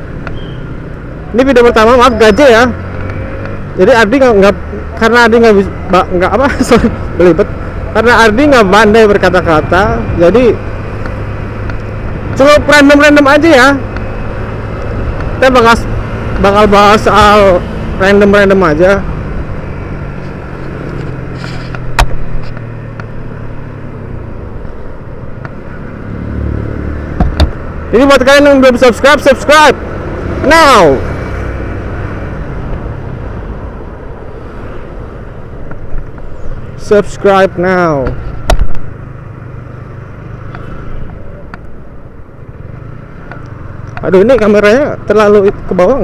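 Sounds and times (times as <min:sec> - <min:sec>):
road and wind noise: 0:00.0 - 0:46.0
loud thump: 0:27.1 - 0:27.6.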